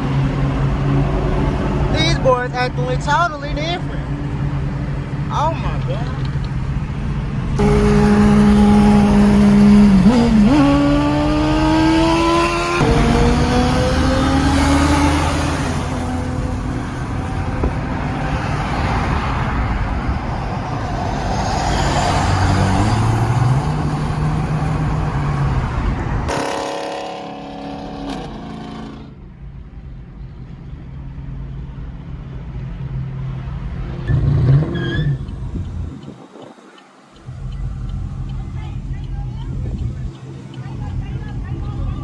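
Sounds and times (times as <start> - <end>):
car engine revving: 0.0 - 29.2, 32.8 - 42.0
rush of noise: 7.6 - 26.4.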